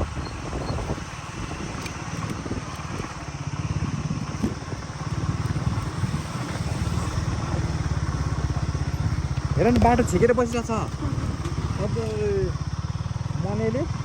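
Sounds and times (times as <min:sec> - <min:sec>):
wind noise: 0:00.0 - 0:08.0
motorcycle engine running: 0:00.0 - 0:14.0
road noise on gravel: 0:00.0 - 0:14.0.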